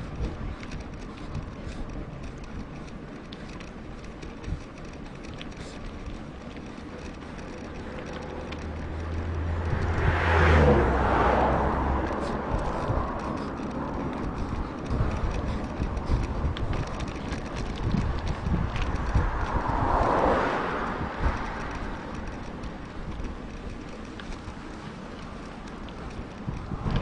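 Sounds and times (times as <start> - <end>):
vehicle passing by: 6.5 - 27.0.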